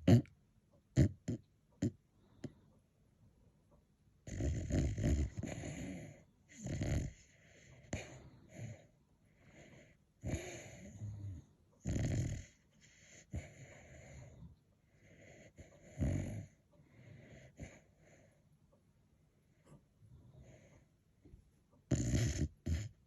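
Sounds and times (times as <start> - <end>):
dog snoring: 0.0 - 0.3, 0.9 - 2.5, 4.2 - 18.4, 20.2 - 20.8, 21.9 - 23.0.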